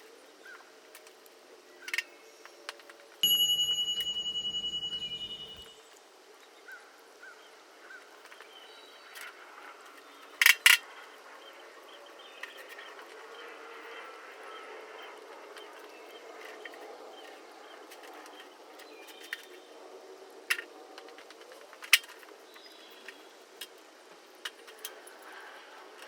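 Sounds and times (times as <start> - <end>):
metal struck ringing: 3.2 - 5.7.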